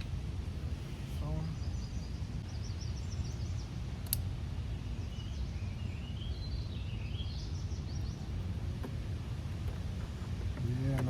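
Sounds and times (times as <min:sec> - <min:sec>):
low outdoor rumble: 0:00.0 - 0:11.0
small birds chirping: 0:00.7 - 0:11.0
sharp click: 0:04.0 - 0:04.3.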